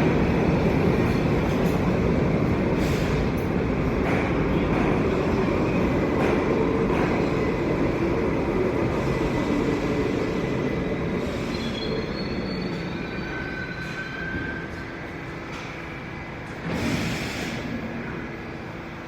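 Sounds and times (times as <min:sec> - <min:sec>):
subway train rumbling on rails: 0:00.0 - 0:19.0
high wheel squeals: 0:11.3 - 0:14.8.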